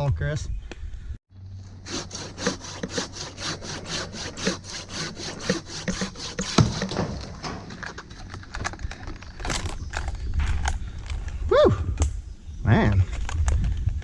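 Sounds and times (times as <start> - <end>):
handsaw cutting wood: 1.8 - 8.0.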